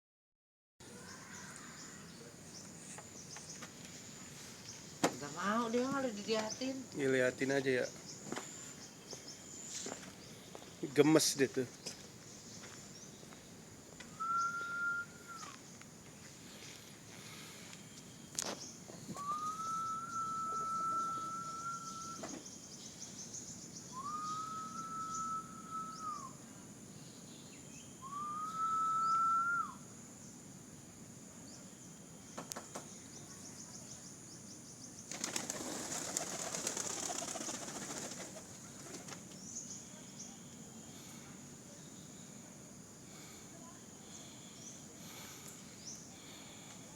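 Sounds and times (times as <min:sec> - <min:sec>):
long whistled notes: 0:14.1 - 0:15.6, 0:19.1 - 0:22.3, 0:23.9 - 0:26.4, 0:28.0 - 0:29.8
pigeon wings flapping: 0:35.1 - 0:39.3.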